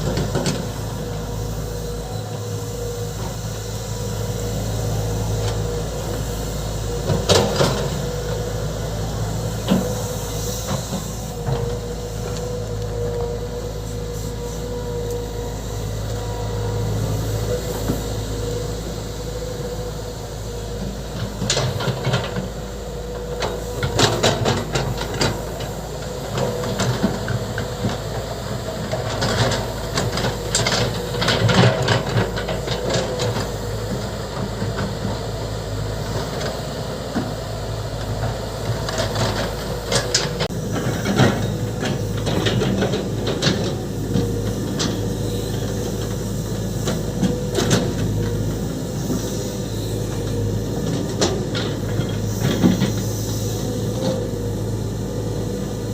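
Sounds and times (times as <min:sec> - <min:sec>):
excavator diesel engine running: 0:00.0 - 0:55.9.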